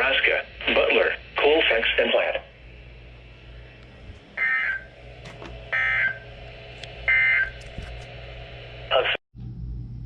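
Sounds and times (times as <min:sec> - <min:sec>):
warbling data tones: 0:04.4 - 0:04.9, 0:05.7 - 0:06.2.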